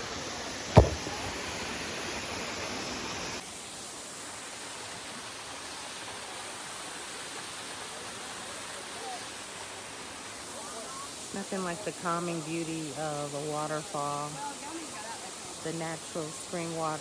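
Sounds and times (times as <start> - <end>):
sharp knock: 0.8 - 1.4.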